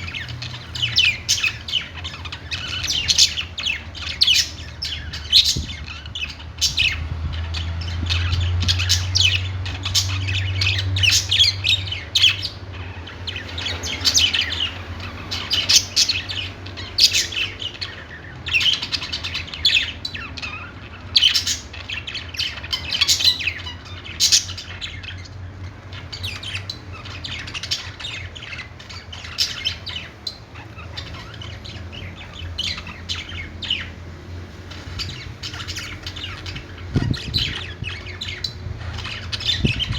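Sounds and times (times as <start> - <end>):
budgerigars chirping and squawking: 0.0 - 39.9.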